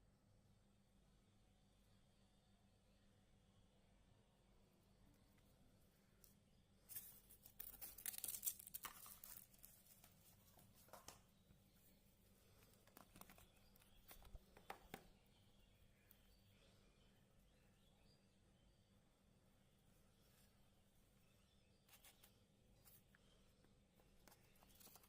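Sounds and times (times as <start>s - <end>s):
packaging rustling and crinkling: 6.9s - 11.2s.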